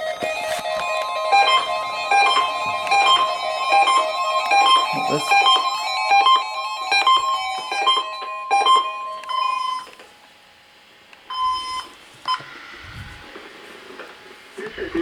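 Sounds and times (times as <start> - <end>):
overlapping electronic alert beeps: 1.2 - 9.8.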